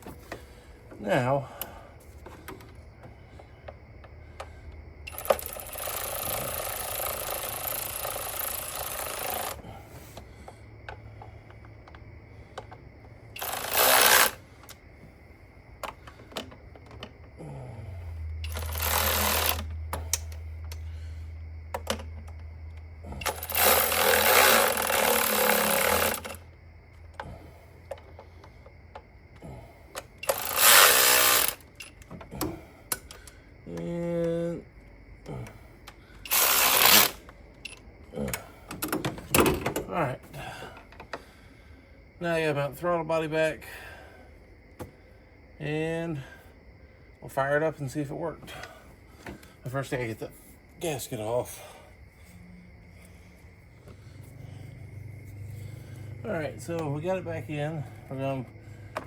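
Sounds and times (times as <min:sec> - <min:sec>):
cordless power tool bursts: 0:13.4 - 0:14.4, 0:18.5 - 0:19.6, 0:23.2 - 0:26.4, 0:30.2 - 0:31.7, 0:36.3 - 0:37.2.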